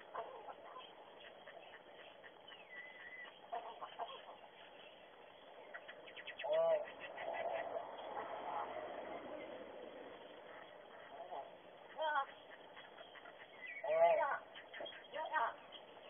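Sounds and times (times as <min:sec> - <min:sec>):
crow clicks: 0:00.0 - 0:08.4.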